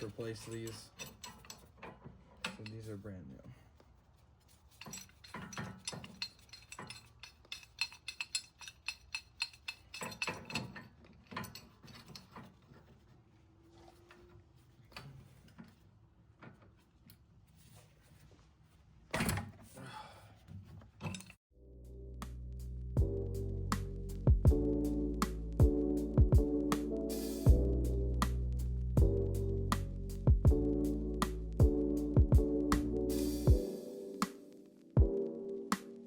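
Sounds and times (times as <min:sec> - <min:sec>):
metal clinks: 0:00.0 - 0:01.8, 0:04.7 - 0:12.4
metal clanks: 0:00.0 - 0:02.9, 0:04.7 - 0:12.6
ratchet wrench clicking: 0:04.8 - 0:11.5
music: 0:21.6 - 0:36.0.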